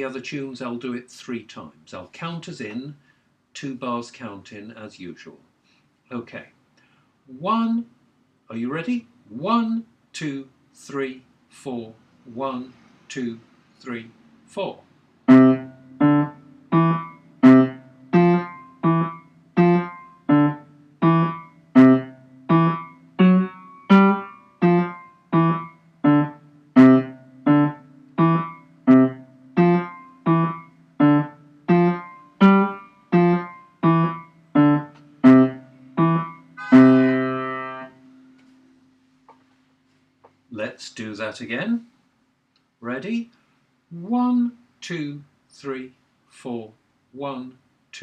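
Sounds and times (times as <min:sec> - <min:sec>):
piano chords in the bass: 0:15.3 - 0:38.3.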